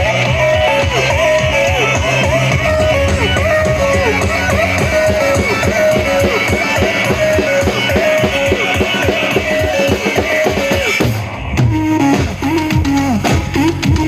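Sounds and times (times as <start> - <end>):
drum kit playing rapidly: 0.0 - 14.0
guitar playing: 0.6 - 9.4.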